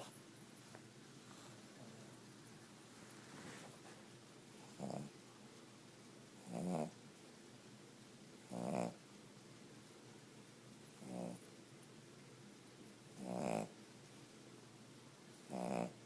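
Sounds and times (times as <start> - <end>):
dog snoring: 4.6 - 5.2, 6.4 - 7.0, 8.4 - 9.0, 11.0 - 11.4, 13.1 - 13.8, 15.4 - 16.0.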